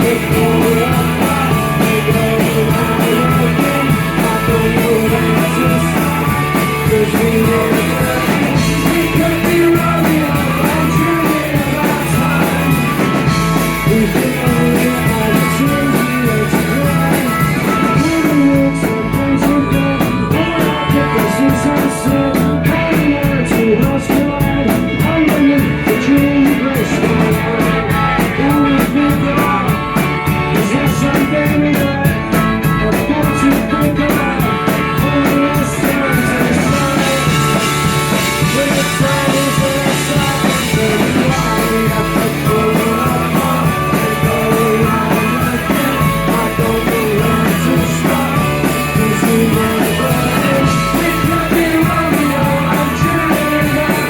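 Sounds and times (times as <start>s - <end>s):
rock band playing live: 0.0s - 54.0s.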